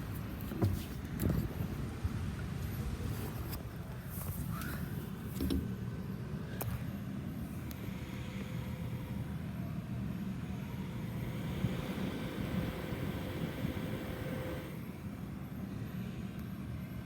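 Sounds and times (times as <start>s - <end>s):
air conditioner unit humming: 0.0s - 17.0s
faint constant whine: 0.0s - 17.0s
hiss: 11.0s - 14.8s.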